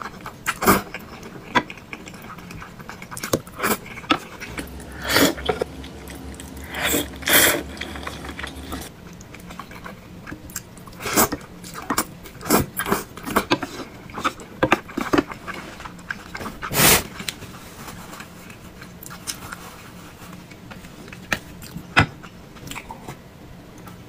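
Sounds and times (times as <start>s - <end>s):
close chewing and mouth sounds: 0.0s - 23.2s.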